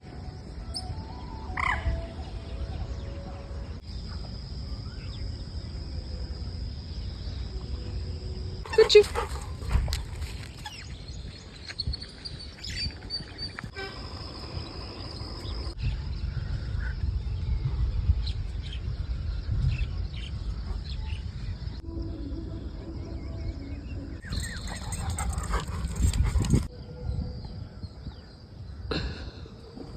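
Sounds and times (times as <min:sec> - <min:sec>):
dog sounds: 0:08.7 - 0:10.0.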